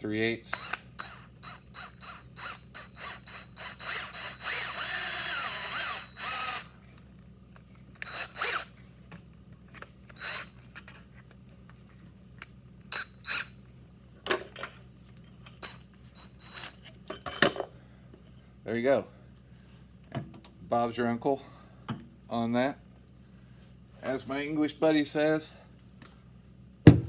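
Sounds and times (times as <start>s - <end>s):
power drill running: 0.5s - 6.8s, 8.0s - 8.8s, 10.1s - 10.5s.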